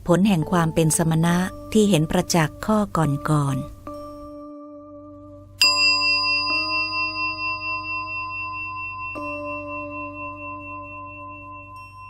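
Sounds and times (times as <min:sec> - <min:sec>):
bell struck and ringing: 0:05.6 - 0:12.0.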